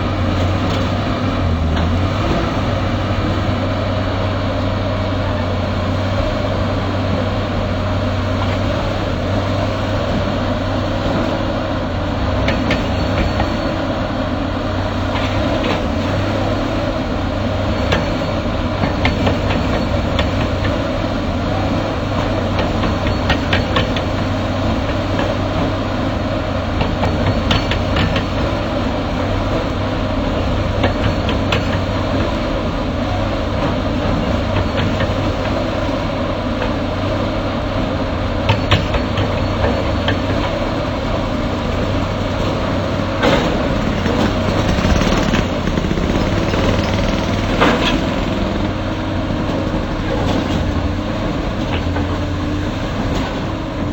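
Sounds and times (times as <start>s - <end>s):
excavator engine running: 0.0s - 53.9s
sharp knocks and clanks: 12.4s - 13.7s, 22.2s - 25.7s, 26.8s - 28.6s, 38.5s - 40.6s, 43.1s - 50.8s.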